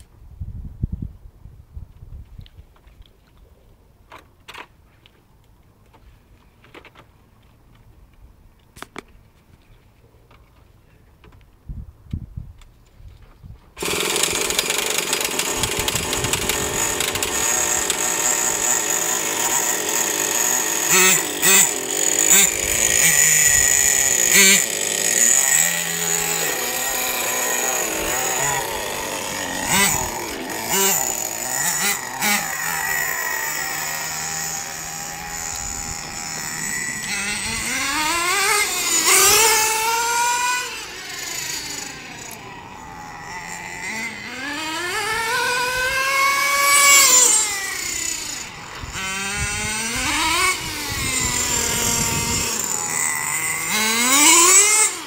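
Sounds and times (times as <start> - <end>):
model truck engine revving: 13.8 - 55.0.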